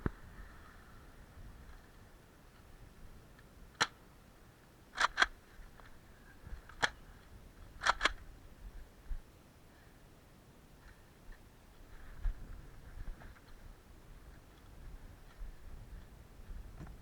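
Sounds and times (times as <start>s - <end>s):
toy blaster mechanical clicks: 5.0s - 5.3s, 7.8s - 8.2s.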